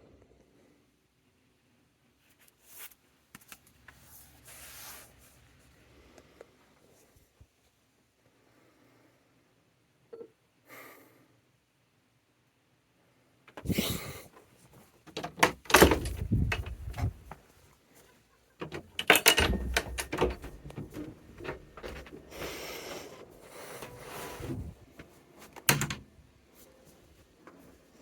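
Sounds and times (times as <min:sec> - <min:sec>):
rustling: 0:14.4 - 0:25.7
knocks clunks and clicks of handling: 0:15.0 - 0:17.4, 0:18.6 - 0:22.6, 0:23.8 - 0:26.1
heavy thuds: 0:15.6 - 0:17.4, 0:18.9 - 0:23.0.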